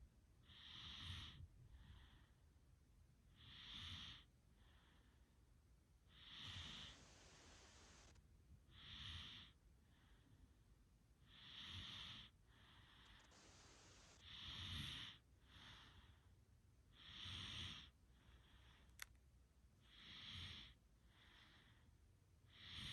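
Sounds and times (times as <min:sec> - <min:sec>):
person snoring softly: 0:00.4 - 0:02.4, 0:03.3 - 0:05.2, 0:06.1 - 0:10.4, 0:11.2 - 0:16.3, 0:16.9 - 0:19.1, 0:19.8 - 0:21.9, 0:22.5 - 0:22.9.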